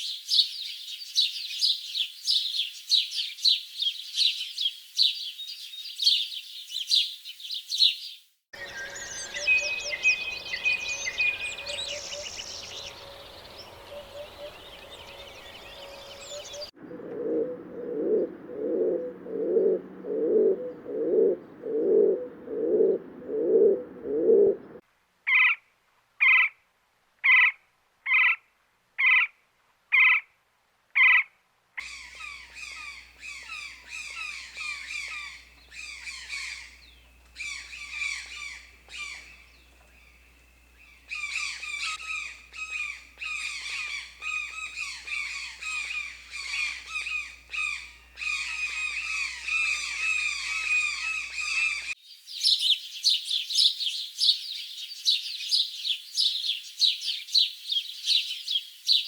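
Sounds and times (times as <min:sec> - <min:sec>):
birds chirping: 0:08.6 - 0:24.8, 0:31.8 - 0:52.0
higher animal calls: 0:08.6 - 0:24.8, 0:31.8 - 0:52.0
low animal call: 0:08.6 - 0:24.8, 0:40.8 - 0:52.0.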